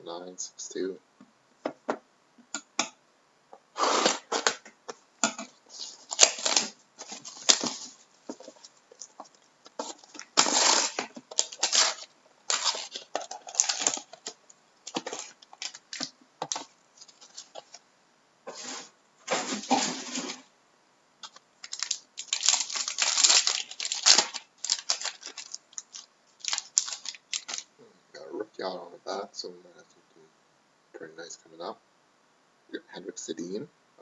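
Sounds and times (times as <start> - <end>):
packaging tearing: 3.8 - 4.6, 5.7 - 9.1, 9.8 - 17.6, 21.2 - 27.7
cards rustling and scraping: 5.3 - 17.8, 18.5 - 20.5, 21.2 - 27.7.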